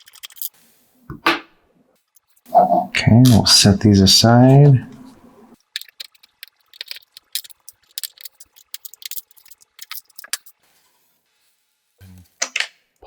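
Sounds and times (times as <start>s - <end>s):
small parts clicking and clinking: 0.0s - 0.6s, 5.6s - 10.6s.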